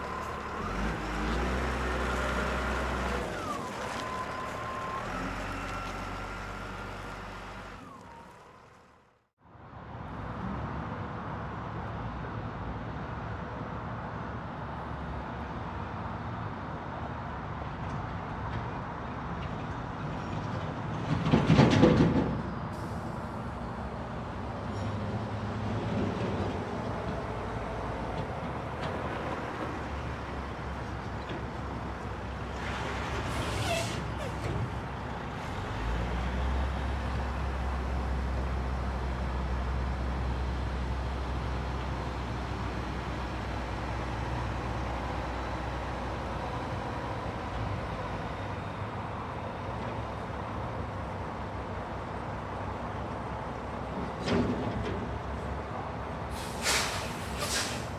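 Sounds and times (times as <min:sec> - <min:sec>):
heavy machinery rumble: 0:00.0 - 0:08.5, 0:21.2 - 0:51.0
short hiss: 0:56.4 - 0:57.9.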